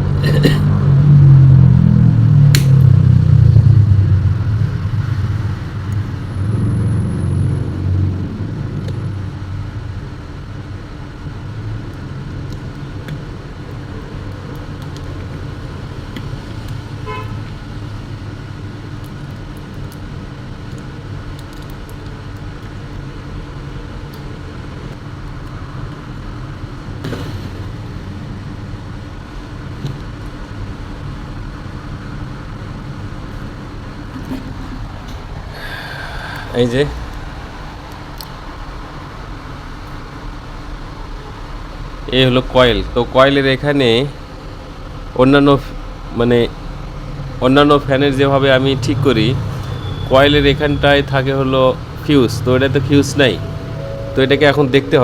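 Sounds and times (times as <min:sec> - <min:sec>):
traffic hum: 0:00.0 - 0:55.0
vehicle rumble: 0:00.0 - 0:55.0
vehicle horn toot: 0:17.0 - 0:17.4, 0:52.5 - 0:55.0.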